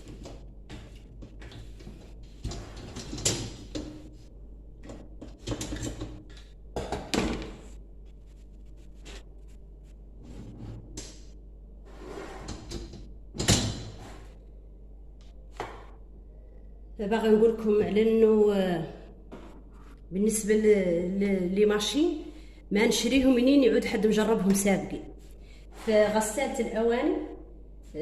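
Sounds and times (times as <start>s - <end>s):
dishwasher racks rattling and scraping: 1.4s - 4.1s.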